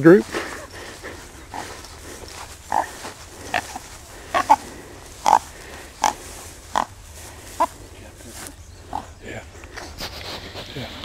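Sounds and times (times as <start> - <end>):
hog squealing: 2.6 - 7.0.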